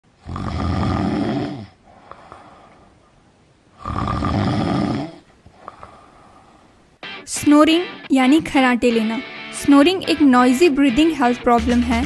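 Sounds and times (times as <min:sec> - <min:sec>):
quiet breathing: 0:00.1 - 0:07.0
person snoring: 0:00.2 - 0:02.7, 0:03.8 - 0:06.6.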